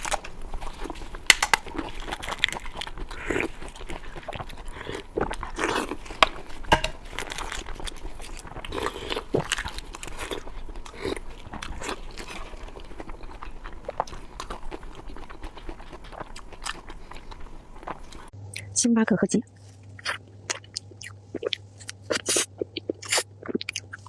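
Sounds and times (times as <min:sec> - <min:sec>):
person chewing food: 0:00.0 - 0:18.4, 0:19.8 - 0:24.0.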